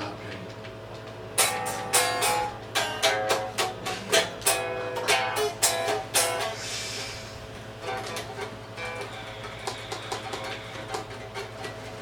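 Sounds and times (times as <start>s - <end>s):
guitar strumming chords: 1.4s - 6.6s, 7.7s - 11.4s.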